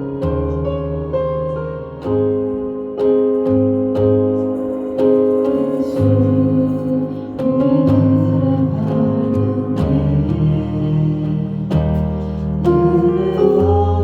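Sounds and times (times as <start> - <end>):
keyboard playing slow chords: 0.0 - 14.0
bass line: 6.0 - 14.0.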